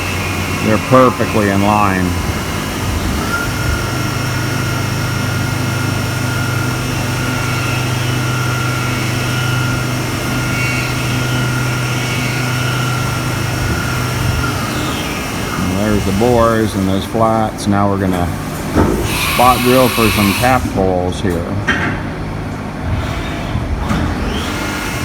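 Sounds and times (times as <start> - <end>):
high cutting whine: 0.0 - 17.8, 19.0 - 21.0
milling spindle hum: 19.1 - 20.6.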